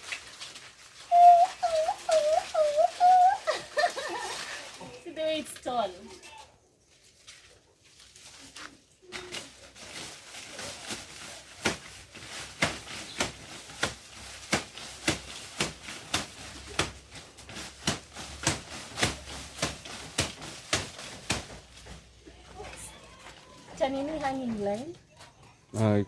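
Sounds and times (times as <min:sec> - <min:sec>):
machete chopping sugarcane: 0:10.9 - 0:22.0.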